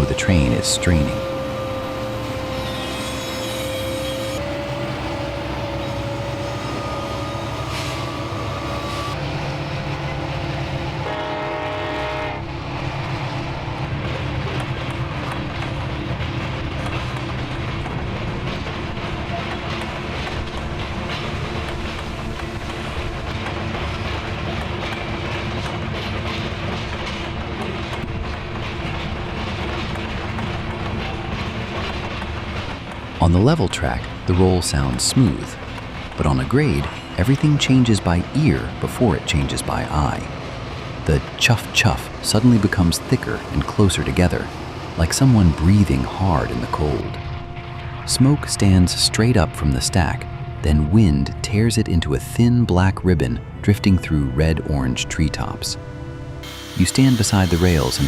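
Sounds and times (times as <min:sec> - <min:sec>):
locomotive whistle: 0:00.0 - 0:09.2, 0:10.9 - 0:12.5, 0:55.7 - 0:58.0
steam locomotive chuffing: 0:00.0 - 0:52.5, 0:55.1 - 0:58.0
wheels clicking on rails: 0:12.5 - 0:47.4, 0:56.4 - 0:58.0.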